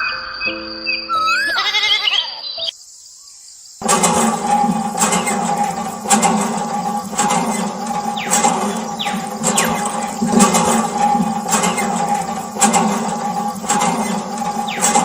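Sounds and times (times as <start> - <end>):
steady hum: 3.8 - 15.0.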